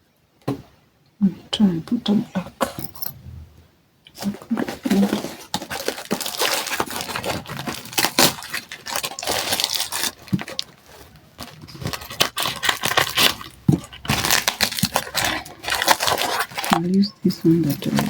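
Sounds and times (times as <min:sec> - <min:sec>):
plastic packaging crinkling: 0:04.1 - 0:18.0.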